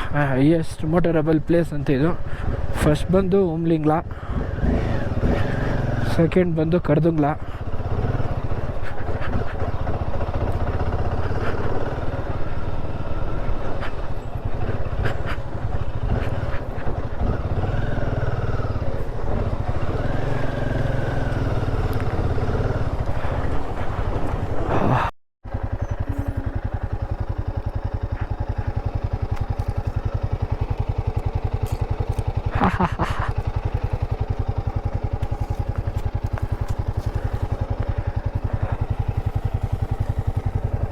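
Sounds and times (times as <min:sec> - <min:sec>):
motorcycle engine running: 0:01.9 - 0:40.9.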